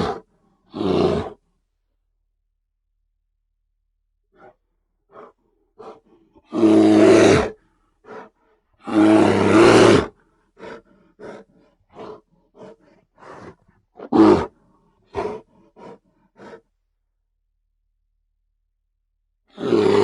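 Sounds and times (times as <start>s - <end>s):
bear roaring: 0.0s - 1.4s, 5.1s - 16.6s, 19.5s - 20.0s
bear grunting: 4.4s - 16.6s.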